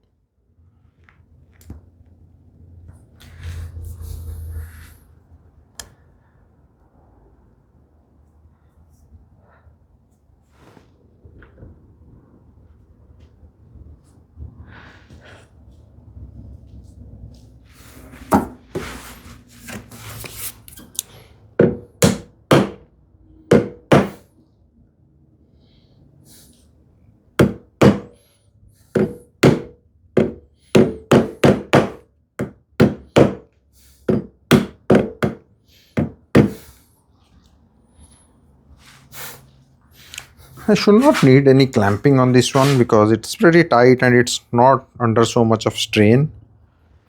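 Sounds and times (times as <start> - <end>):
sharp wooden knocks: 21.6 - 22.8, 23.5 - 24.2, 27.4 - 28.2, 29.0 - 33.4, 34.1 - 35.4, 36.0 - 36.6.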